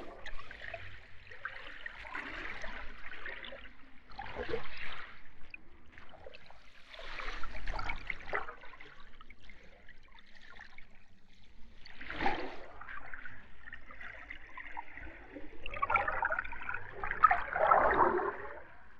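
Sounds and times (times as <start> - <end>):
muffled underwater wash: 0.0 - 18.9
bubbling water: 13.8 - 18.9.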